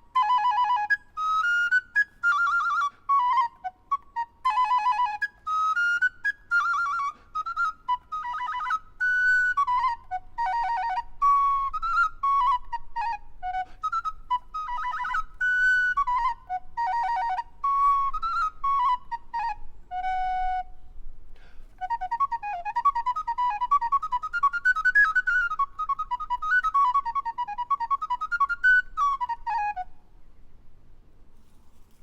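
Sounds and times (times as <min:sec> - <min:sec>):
recorder playing trills: 0:00.0 - 0:20.5.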